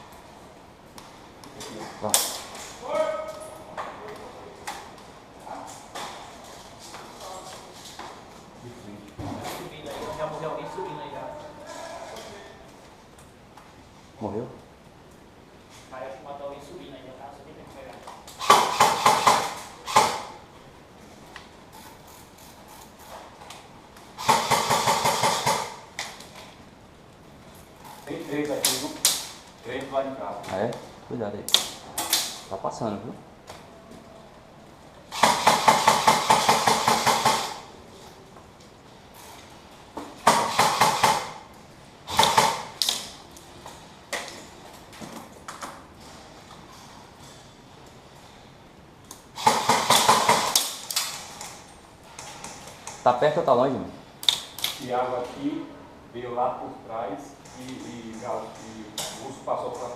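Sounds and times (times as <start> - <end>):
airsoft guns firing bursts: 18.4 - 20.4, 24.2 - 25.8, 35.1 - 37.7, 40.2 - 41.4, 42.1 - 42.8, 49.4 - 50.8.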